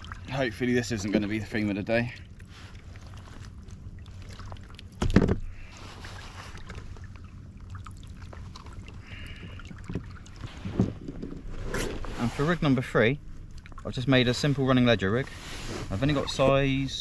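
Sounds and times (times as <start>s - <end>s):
steady low rumble: 7.1s - 17.0s.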